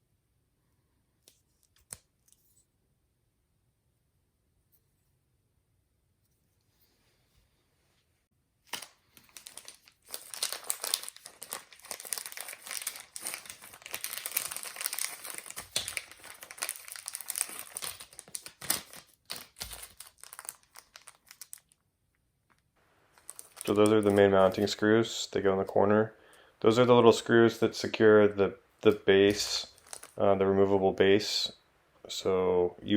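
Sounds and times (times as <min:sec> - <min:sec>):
plastic packaging crinkling: 0:08.7 - 0:21.8, 0:22.5 - 0:30.5.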